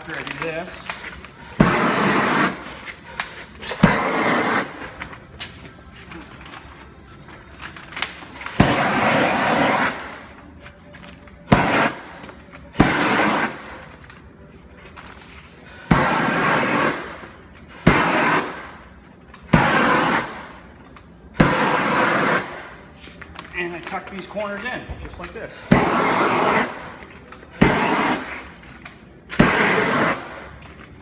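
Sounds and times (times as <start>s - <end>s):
rushing flame noise: 1.4s - 5.0s, 15.8s - 18.6s, 21.4s - 22.7s, 25.7s - 27.0s, 27.6s - 28.6s.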